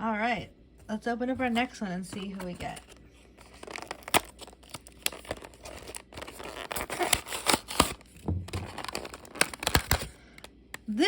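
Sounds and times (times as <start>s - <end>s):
packaging crinkling and tearing: 2.0s - 10.9s.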